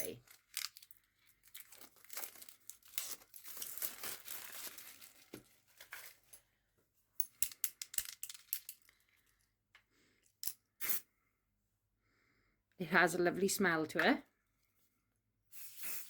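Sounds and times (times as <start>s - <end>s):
plastic packaging crinkling: 0.0s - 6.3s.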